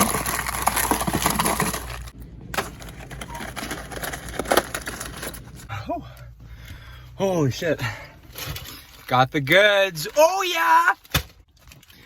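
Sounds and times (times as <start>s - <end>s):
packets crinkling and clicking: 0.0s - 5.6s.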